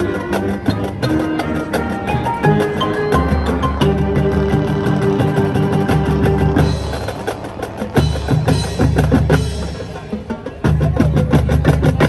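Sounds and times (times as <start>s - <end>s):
marching band playing: 0.0s - 12.0s
percussion hits: 0.3s - 12.0s
low brass chords: 1.5s - 9.8s.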